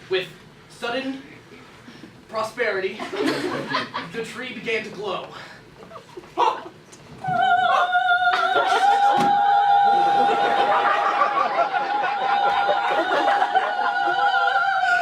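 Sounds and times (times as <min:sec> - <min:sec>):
audience laughter: 0:03.0 - 0:04.1, 0:09.9 - 0:15.0.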